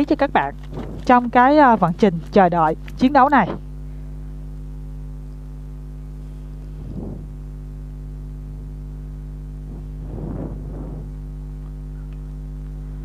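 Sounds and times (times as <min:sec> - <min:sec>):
electrical hum: 0:00.0 - 0:13.0
soft rustles: 0:00.6 - 0:02.0, 0:06.6 - 0:07.4, 0:09.6 - 0:12.2.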